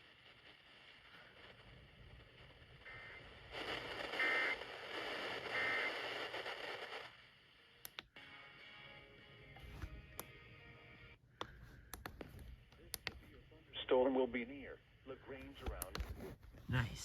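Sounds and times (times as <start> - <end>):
radio static hiss: 0.0 - 7.9, 11.8 - 17.0
sharp clicks: 7.8 - 8.1.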